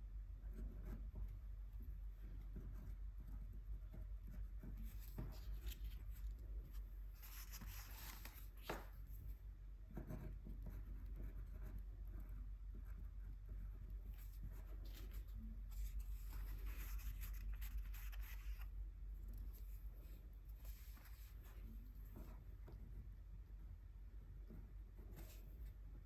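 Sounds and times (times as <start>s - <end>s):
soft brush strokes on paper: 0.4s - 23.6s, 24.4s - 26.0s.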